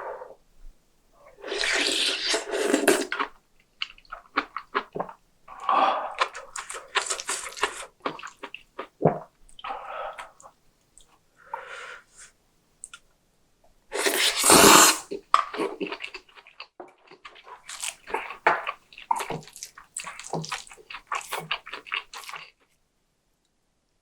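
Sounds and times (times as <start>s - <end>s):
wet slurp: 1.4s - 3.3s, 14.0s - 16.1s
wet chewing and smacking: 1.6s - 11.2s, 15.1s - 22.6s.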